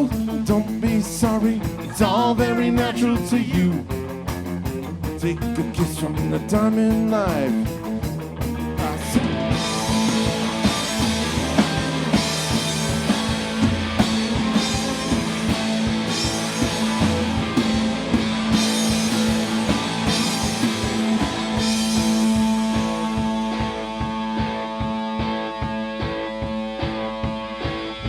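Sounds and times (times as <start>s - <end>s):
drum kit beat: 0.0s - 28.0s
rock guitars: 0.0s - 28.0s.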